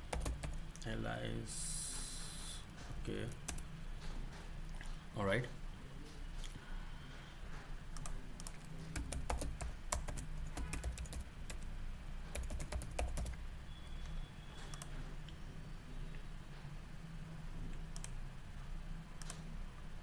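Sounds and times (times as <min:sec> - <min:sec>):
computer keyboard typing: 0:00.0 - 0:00.6, 0:02.8 - 0:04.1, 0:07.9 - 0:11.7, 0:12.3 - 0:13.4, 0:17.9 - 0:18.2, 0:19.2 - 0:19.5
low steady hum: 0:00.0 - 0:20.0.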